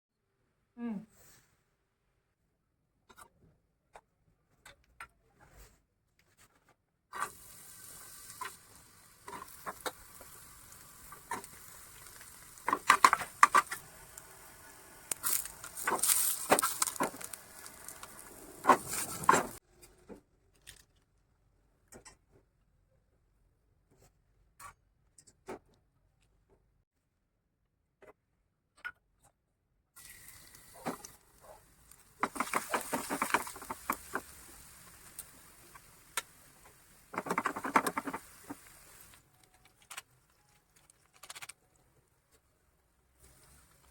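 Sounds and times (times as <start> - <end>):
food sizzling in a pan: 7.2 - 19.6, 30.0 - 39.2
spatula stirring and scraping: 8.3 - 14.2, 15.1 - 19.6, 30.7 - 39.2.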